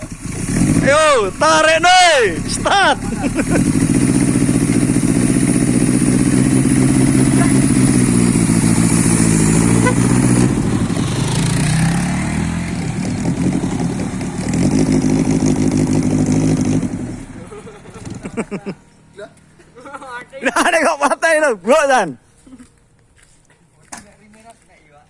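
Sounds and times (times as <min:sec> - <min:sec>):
race car engine revving: 0:00.0 - 0:18.6.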